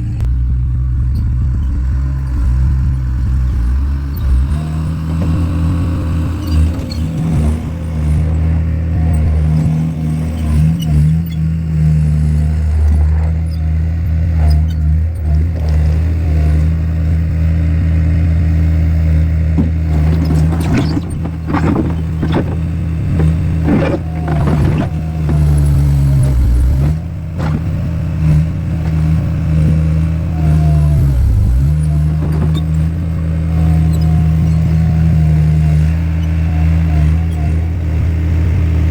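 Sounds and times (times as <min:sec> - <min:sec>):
loader engine running: 0:00.0 - 0:38.9
concrete blocks clattering: 0:19.6 - 0:27.7.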